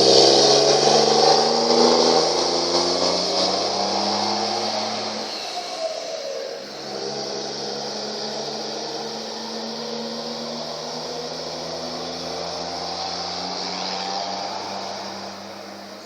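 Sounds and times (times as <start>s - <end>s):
truck diesel engine pulling: 0.0s - 16.0s
turbo hiss: 2.5s - 16.0s.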